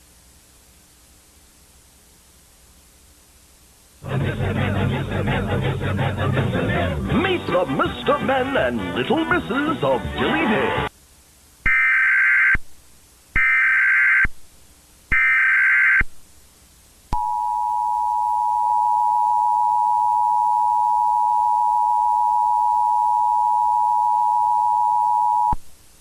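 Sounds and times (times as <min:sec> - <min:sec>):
two-tone attention signal: 0:17.2 - 0:25.6.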